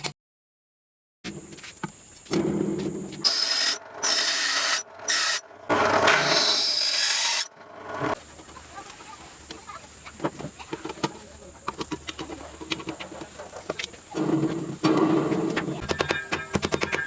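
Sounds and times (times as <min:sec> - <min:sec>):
hand tool scraping wood: 0:02.3 - 0:08.2.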